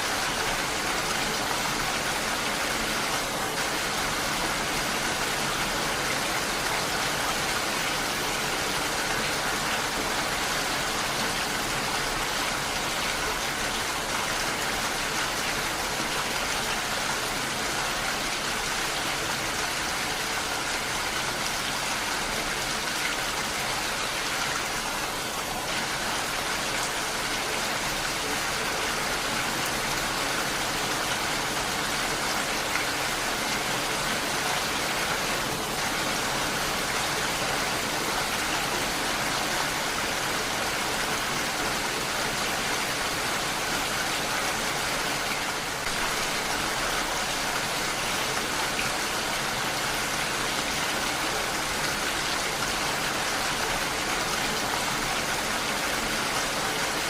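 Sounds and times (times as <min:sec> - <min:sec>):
heavy rain: 0:00.0 - 0:57.0.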